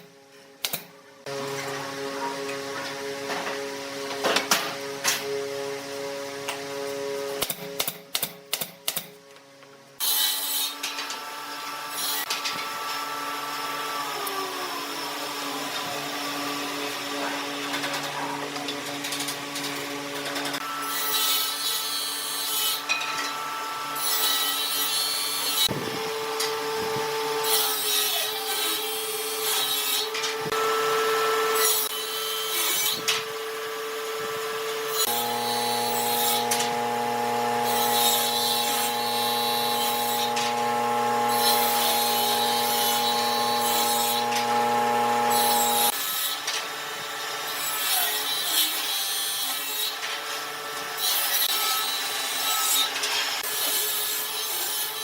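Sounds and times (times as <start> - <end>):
power tool motor hum: 34.8 - 46.0.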